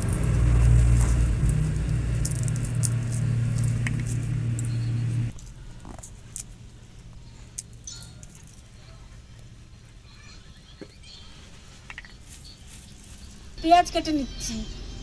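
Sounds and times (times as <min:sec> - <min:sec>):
low steady hum: 0:00.0 - 0:05.4.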